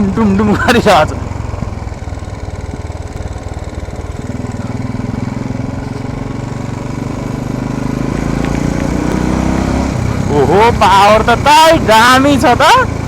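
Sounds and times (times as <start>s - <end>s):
motorcycle engine thumping: 0.6s - 10.8s.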